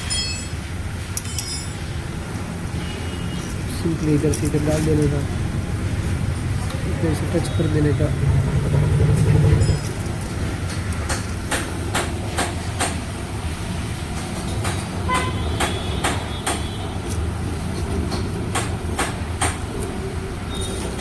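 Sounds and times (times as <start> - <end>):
metal tools clinking and tapping: 0.0 - 2.0, 9.6 - 11.3.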